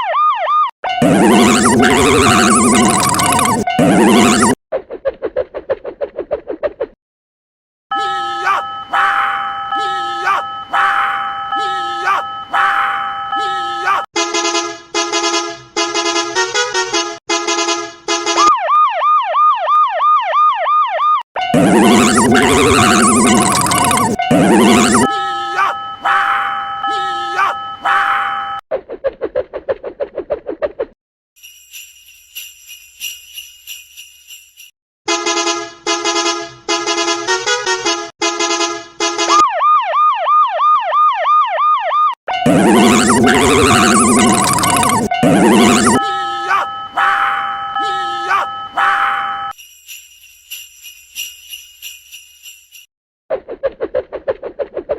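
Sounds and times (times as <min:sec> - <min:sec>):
cartoon siren sweeps: 0:00.0 - 0:04.6, 0:18.4 - 0:26.7, 0:39.4 - 0:49.4
pulsing electronic tone: 0:01.0 - 0:04.6, 0:21.6 - 0:25.1, 0:42.4 - 0:46.0
cartoon horn blasts: 0:14.2 - 0:18.5
high jingling ring: 0:31.4 - 0:34.7, 0:49.6 - 0:52.9.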